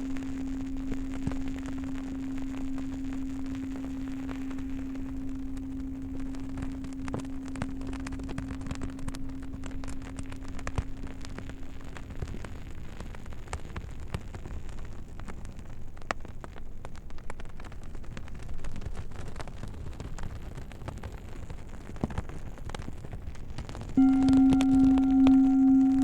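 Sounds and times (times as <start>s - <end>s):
singing bowl tone: 0.0s - 12.0s, 24.0s - 26.0s
campfire crackling and popping: 0.0s - 26.0s.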